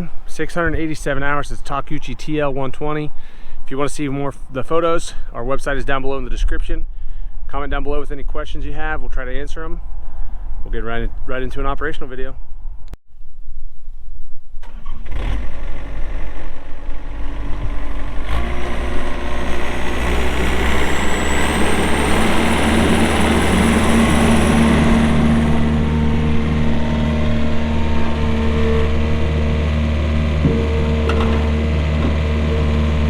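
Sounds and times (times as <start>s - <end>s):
diesel engine cranking and running: 14.6s - 33.0s.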